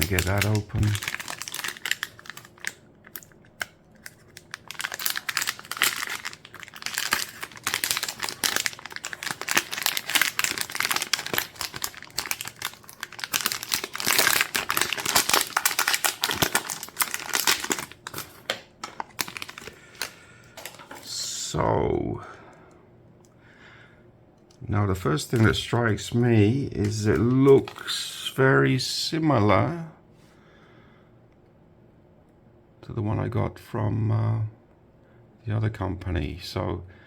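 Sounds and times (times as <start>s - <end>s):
plastic bag crinkling: 0.0s - 21.2s, 25.2s - 28.1s
plastic tearing crackles: 0.0s - 21.2s, 25.2s - 28.0s.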